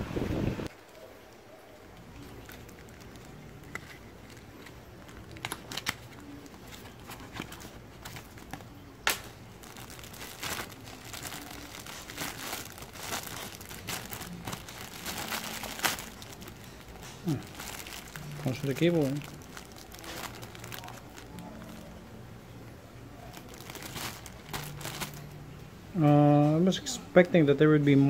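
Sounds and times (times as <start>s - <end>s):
plastic packaging crinkling: 1.9s - 22.0s, 23.1s - 25.4s.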